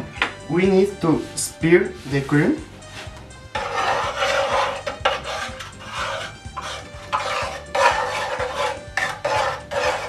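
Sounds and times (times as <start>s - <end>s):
spoon scraping round a pan: 2.1s - 10.0s.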